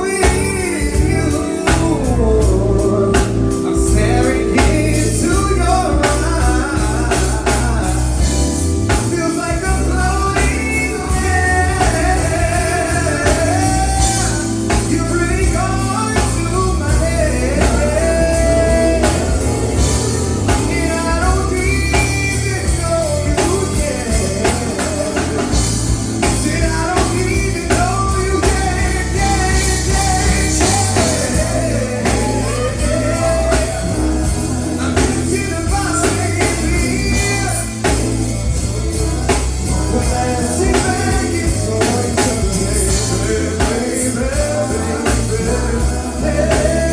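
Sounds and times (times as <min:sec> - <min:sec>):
drum kit beat: 0:00.0 - 0:46.9
live rock band playing: 0:00.0 - 0:46.9
person singing: 0:00.0 - 0:46.9.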